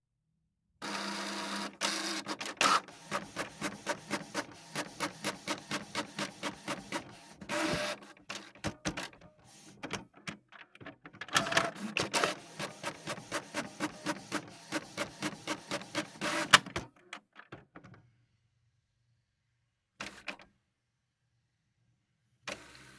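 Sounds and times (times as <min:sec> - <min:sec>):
printer printing: 0:00.8 - 0:10.0, 0:11.3 - 0:16.9.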